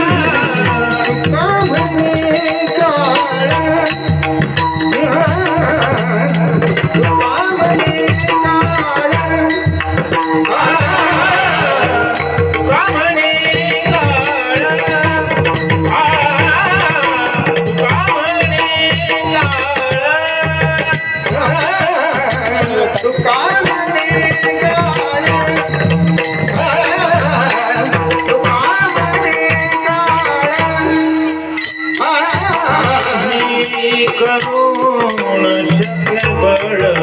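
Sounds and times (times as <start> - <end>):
hand drum beating: 0.0 - 37.0
men singing devotional tune: 0.0 - 37.0
small hand cymbals: 13.5 - 37.0.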